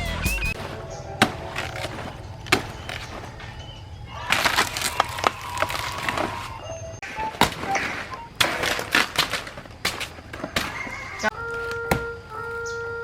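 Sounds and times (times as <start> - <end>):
sharp cracks and snaps: 4.3 - 6.3.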